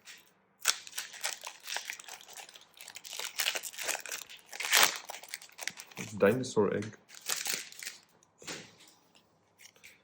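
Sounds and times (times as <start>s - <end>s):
stiff wrapper crinkling and tearing: 0.6s - 6.2s, 7.1s - 8.1s.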